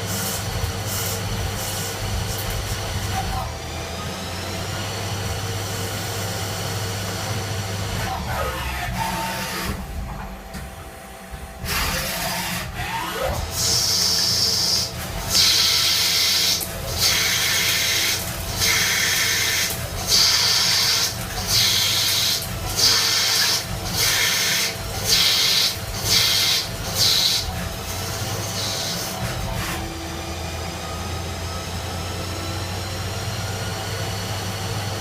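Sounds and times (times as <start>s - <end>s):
steady motor hum: 0.0s - 35.0s.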